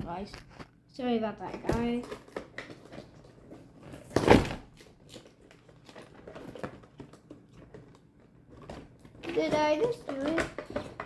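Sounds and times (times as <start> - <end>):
handling clicks and knocks: 5.0 - 11.0.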